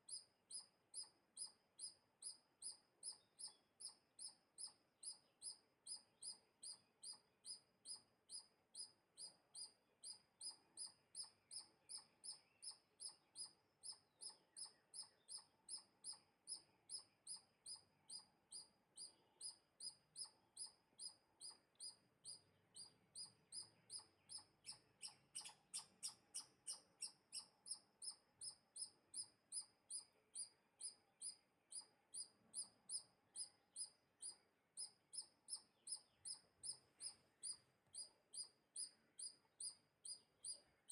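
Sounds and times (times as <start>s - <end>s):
small animal chirping: 0.0s - 40.9s.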